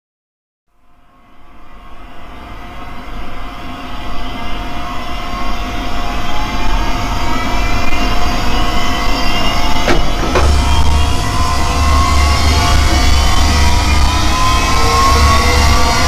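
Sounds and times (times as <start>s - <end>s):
faint rising whines: 1.4s - 16.0s
monster rumbling noise: 10.2s - 16.0s.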